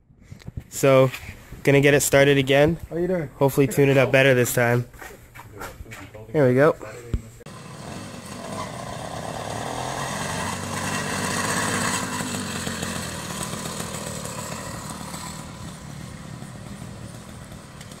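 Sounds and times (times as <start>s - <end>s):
small two-stroke engine buzzing: 7.5s - 18.0s.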